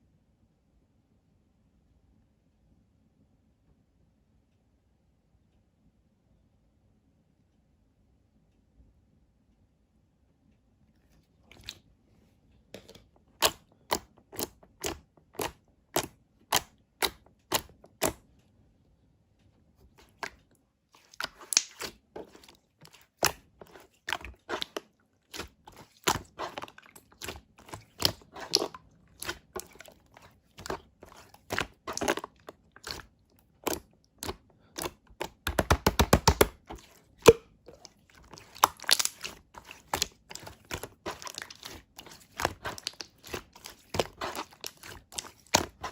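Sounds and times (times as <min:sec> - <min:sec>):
slime popping and crackling: 0:13.4 - 0:18.2, 0:21.0 - 0:45.9.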